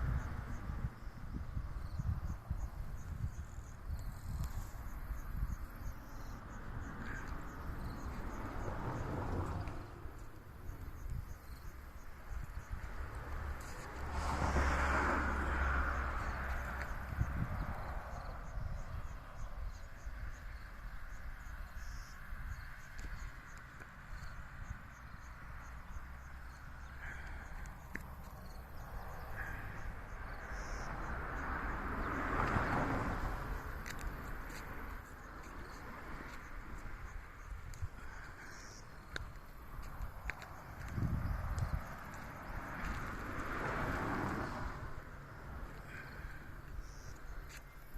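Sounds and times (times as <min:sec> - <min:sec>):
wind rumble: 0:00.0 - 0:23.5, 0:27.0 - 0:47.5
insects chirping: 0:00.0 - 0:47.9
vehicle passing: 0:04.6 - 0:18.6, 0:25.4 - 0:38.6, 0:39.5 - 0:47.9.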